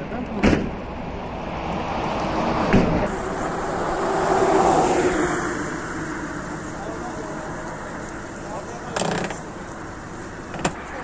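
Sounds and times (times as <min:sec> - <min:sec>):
vehicle engine running: 0:03.0 - 0:11.0.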